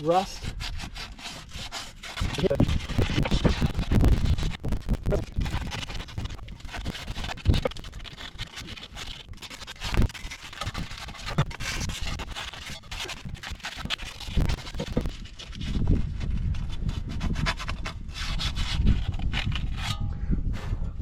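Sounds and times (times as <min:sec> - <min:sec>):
sandpaper scratching on steel: 0:00.0 - 0:03.9.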